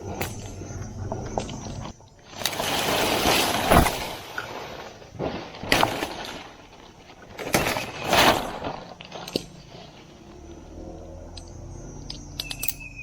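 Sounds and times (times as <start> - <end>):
fronds crashing down: 0.1 - 10.5
palm fronds rustling swish: 1.6 - 10.8.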